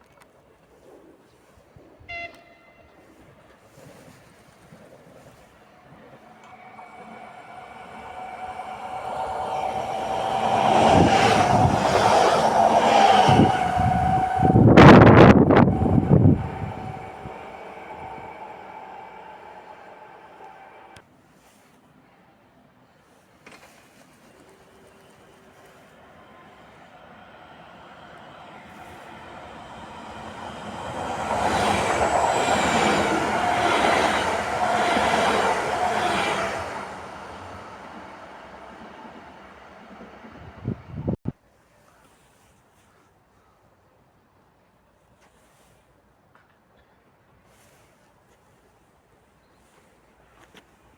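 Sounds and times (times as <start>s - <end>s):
train rolling past: 4.7s - 21.0s, 24.4s - 41.2s
steady whine: 5.9s - 21.0s.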